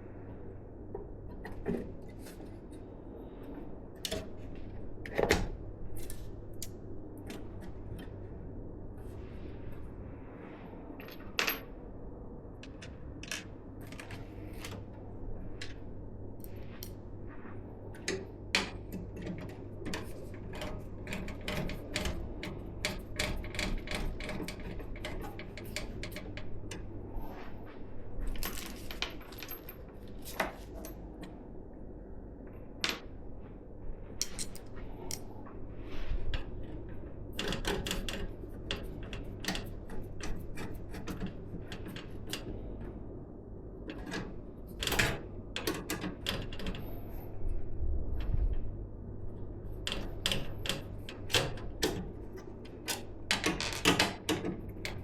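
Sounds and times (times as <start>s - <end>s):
low steady hum: 0.0s - 55.0s
computer parts clicking and rattling: 18.0s - 26.8s, 37.4s - 42.8s.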